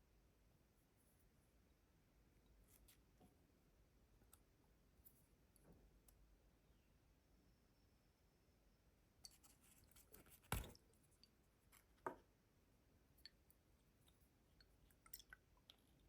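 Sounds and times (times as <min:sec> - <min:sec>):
light clicks and taps on packaging: 0:09.3 - 0:10.9.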